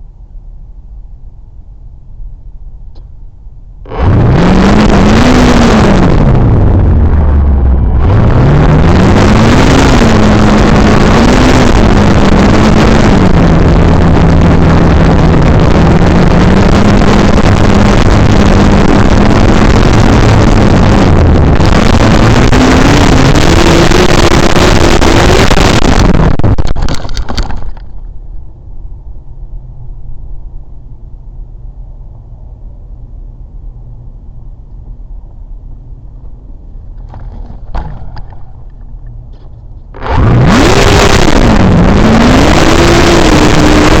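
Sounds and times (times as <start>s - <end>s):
faint low hum: 0.0s - 4.4s, 24.1s - 40.0s
loud rushing noise: 3.8s - 30.6s.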